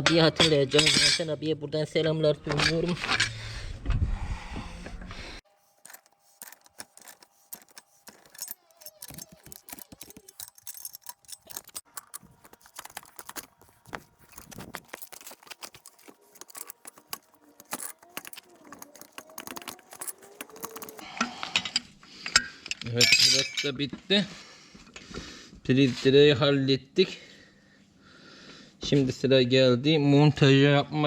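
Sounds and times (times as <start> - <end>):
metallic clicks of hand tools: 5.8 - 21.3.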